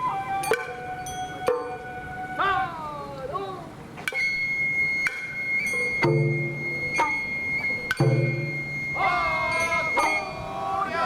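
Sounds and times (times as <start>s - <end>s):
bamboo flute long high note: 0.0s - 11.0s
wavering sliding tone: 4.0s - 10.6s
drum strikes: 6.0s - 7.2s, 7.9s - 8.7s.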